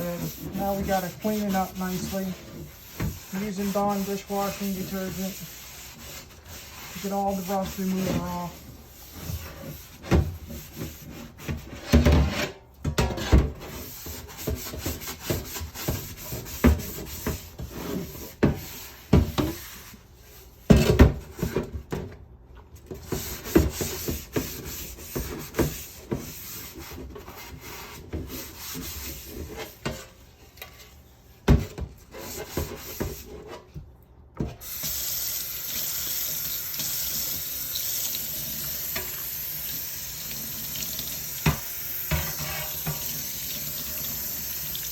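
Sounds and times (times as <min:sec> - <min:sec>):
scrubbing metal lid: 0:00.0 - 0:12.5, 0:13.1 - 0:20.0, 0:23.0 - 0:30.2, 0:40.7 - 0:44.9
water running from a tap: 0:34.6 - 0:44.9.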